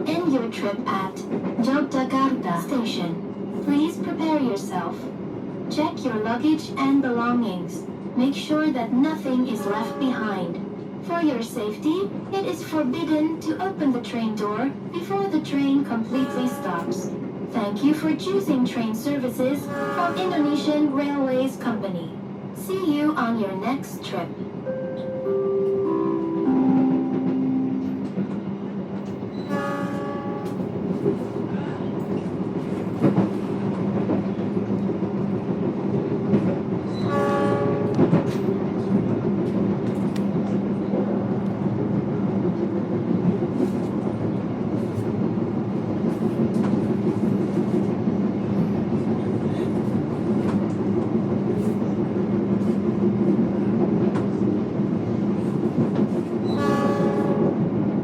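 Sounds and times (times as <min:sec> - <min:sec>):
train carriage rumble: 0:00.0 - 0:58.0
train horn: 0:09.6 - 0:10.3, 0:16.1 - 0:17.1, 0:19.6 - 0:20.6, 0:29.5 - 0:30.6, 0:37.0 - 0:38.0, 0:56.5 - 0:57.7.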